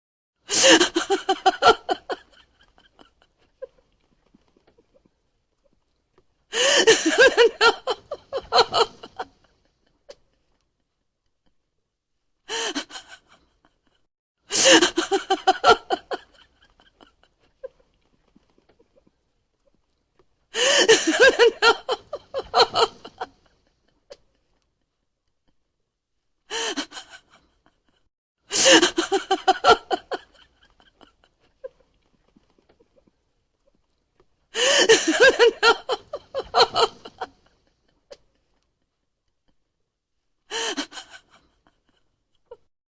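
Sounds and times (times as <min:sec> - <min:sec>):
woman laughing loudly: 0:00.5 - 0:03.2, 0:06.6 - 0:09.3, 0:14.5 - 0:17.2, 0:20.6 - 0:23.4, 0:28.5 - 0:31.2, 0:34.6 - 0:37.4.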